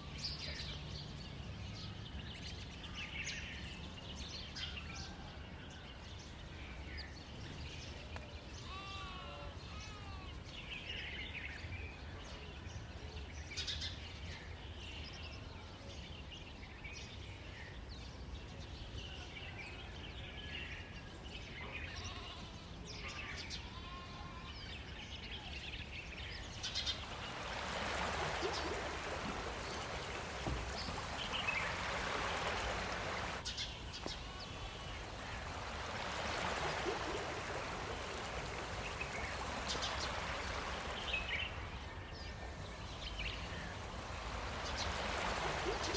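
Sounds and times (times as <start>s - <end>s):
animal bleats and chirps: 8.6s - 10.3s, 23.6s - 24.5s.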